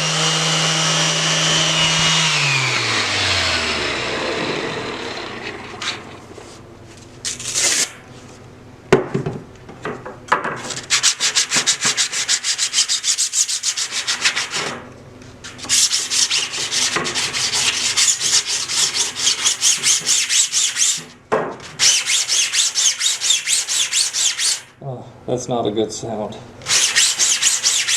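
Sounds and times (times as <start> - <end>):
sandpaper rubbing on plastic: 10.8 - 14.7, 15.5 - 21.1, 21.8 - 24.7, 26.7 - 27.9.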